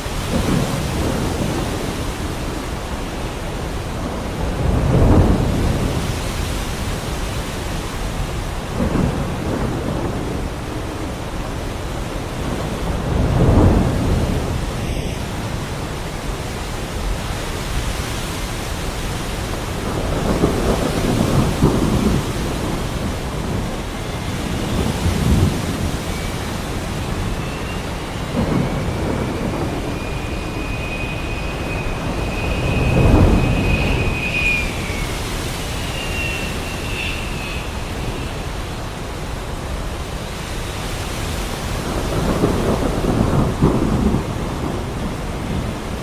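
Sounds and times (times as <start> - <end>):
heavy rain pouring: 0.0 - 46.0
thunder rumbling: 0.0 - 46.0
thin high whine: 17.6 - 40.3.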